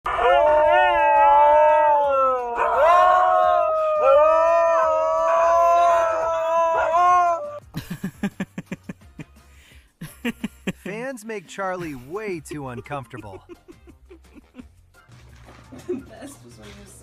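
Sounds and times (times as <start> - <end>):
dog howling: 0.1 - 7.6.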